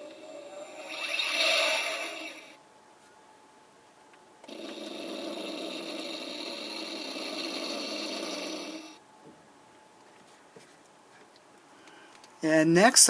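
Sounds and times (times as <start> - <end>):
toy speaker noisy hum: 0.0 - 2.6, 4.4 - 9.0.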